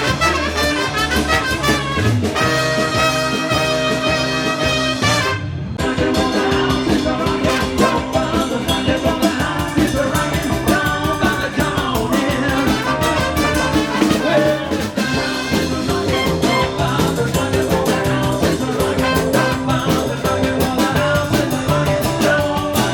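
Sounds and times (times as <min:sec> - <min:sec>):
brass and saxophone lines: 0:00.0 - 0:08.8, 0:12.2 - 0:20.6
steady drum beat: 0:00.0 - 0:22.9.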